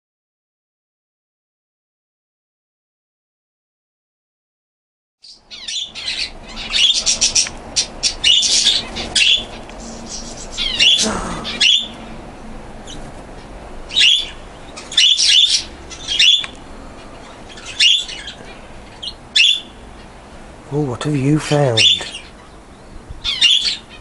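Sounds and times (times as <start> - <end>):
small birds chirping: 5.2 - 24.0.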